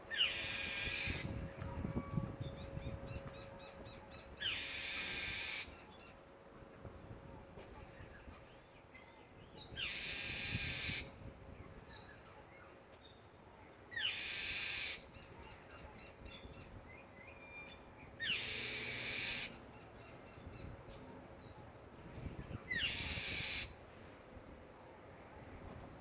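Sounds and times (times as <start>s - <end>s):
bird screeching: 22.8s - 23.7s.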